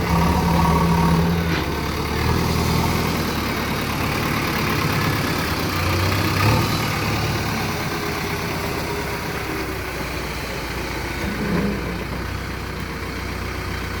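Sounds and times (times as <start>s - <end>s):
backhoe diesel engine idling: 0.0s - 14.0s.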